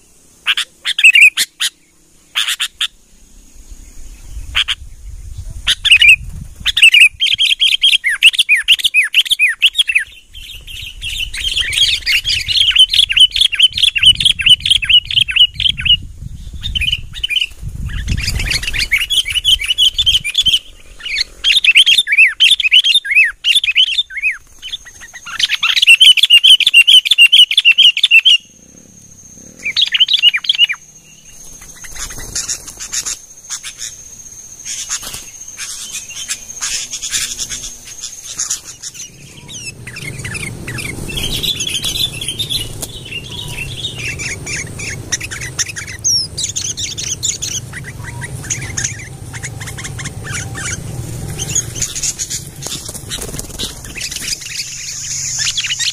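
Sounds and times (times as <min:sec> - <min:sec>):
bulbuls chirping: 0:00.0 - 0:55.9
low steady rumble: 0:36.1 - 0:55.6.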